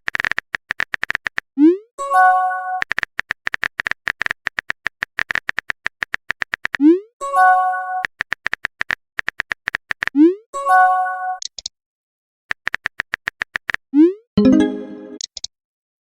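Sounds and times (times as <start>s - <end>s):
phone keyboard typing clicks: 0.0s - 1.5s, 2.8s - 6.8s, 8.0s - 10.2s, 12.5s - 13.8s
message alert swoop and chime: 14.4s - 15.2s.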